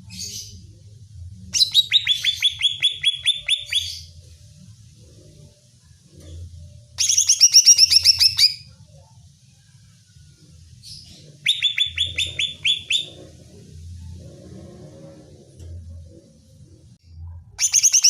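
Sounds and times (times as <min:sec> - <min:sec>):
bird whistling down-slurred notes: 0:11.5 - 0:13.2.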